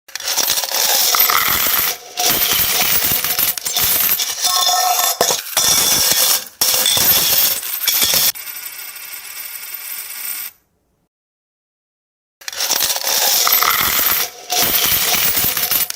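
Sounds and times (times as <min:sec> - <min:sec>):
coins pouring onto hard surface: 0:00.9 - 0:08.3, 0:12.8 - 0:15.9.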